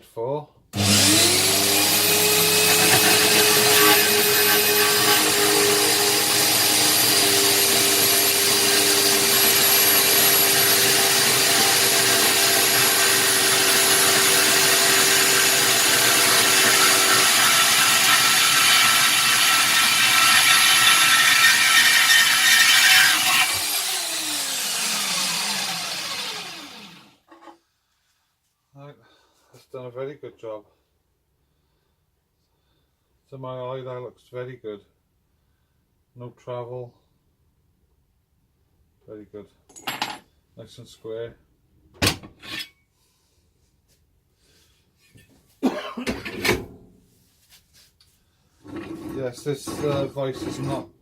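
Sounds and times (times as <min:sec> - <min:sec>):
motor winding down: 0:00.8 - 0:04.8, 0:20.4 - 0:27.2
bandsaw cutting steel: 0:00.8 - 0:27.3.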